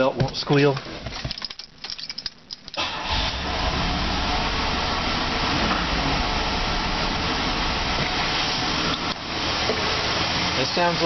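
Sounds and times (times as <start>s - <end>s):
car engine starting and running: 2.3s - 11.0s.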